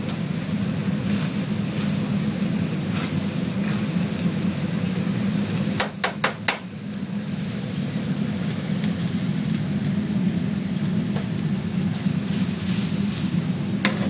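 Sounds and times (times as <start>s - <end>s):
utensil tapping a pan: 5.8s - 6.6s.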